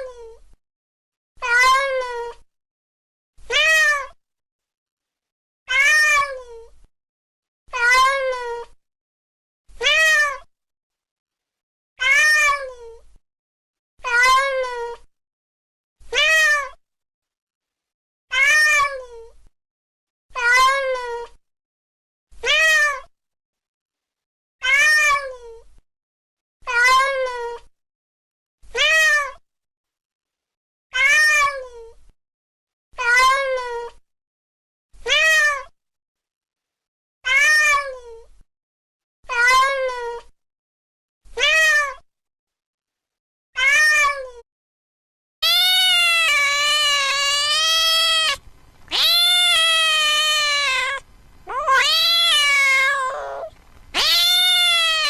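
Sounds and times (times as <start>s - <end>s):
cat meowing: 5.7s - 6.3s, 37.3s - 37.8s, 43.6s - 44.2s, 45.4s - 55.0s.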